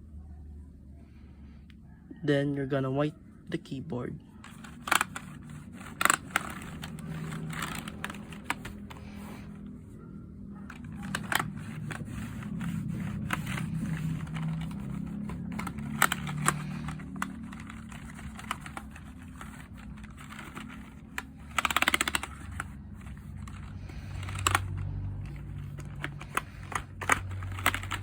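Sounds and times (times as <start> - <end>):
keyboard keys clicking: 4.4 - 9.3, 10.6 - 28.0
cloth wiping keyboard: 4.4 - 9.8, 10.6 - 28.0.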